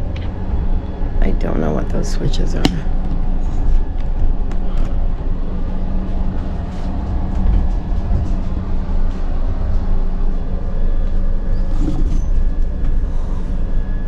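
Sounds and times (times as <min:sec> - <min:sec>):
steady hum: 0:00.0 - 0:14.0
train low rumble: 0:00.0 - 0:14.0.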